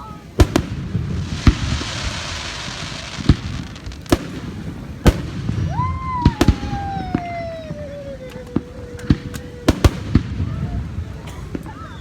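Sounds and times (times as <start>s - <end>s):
firework bangs: 0.0s - 12.0s
whistling firework shell: 5.5s - 10.4s.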